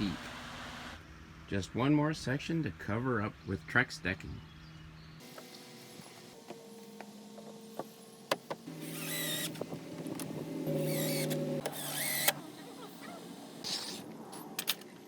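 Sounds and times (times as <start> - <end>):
cordless power drill running: 8.6 - 13.6.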